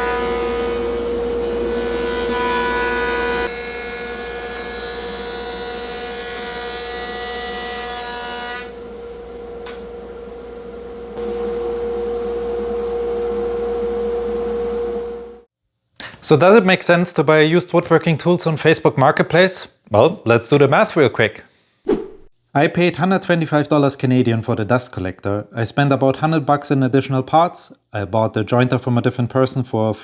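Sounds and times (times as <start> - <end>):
woodworking machine motor whine: 0.0 - 15.5.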